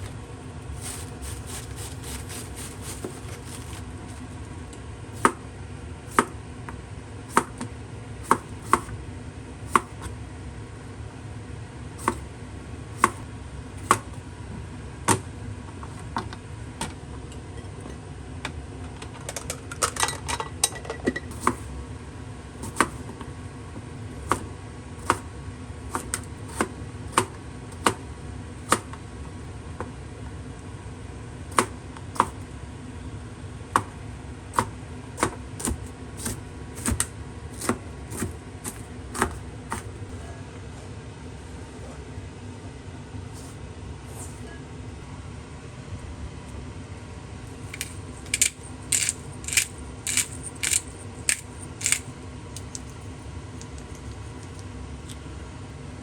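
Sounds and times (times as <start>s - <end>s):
kitchenware clattering: 19.2s - 21.3s.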